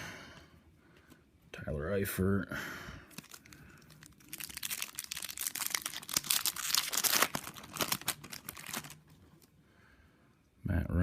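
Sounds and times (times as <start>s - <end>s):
wrapper crinkling and tearing: 3.1s - 9.5s.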